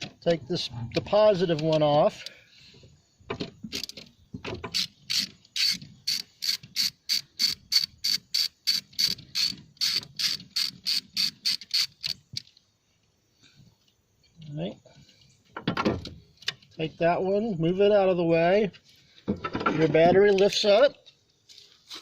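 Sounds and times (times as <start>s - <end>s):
socket ratchet clicking: 4.7s - 12.2s.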